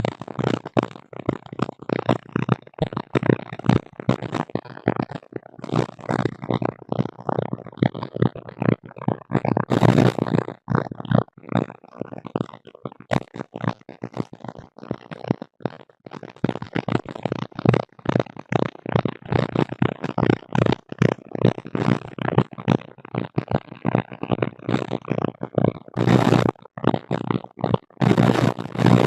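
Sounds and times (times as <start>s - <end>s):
garbled interference noise: 0.0s - 2.1s, 9.6s - 10.4s, 26.0s - 29.0s.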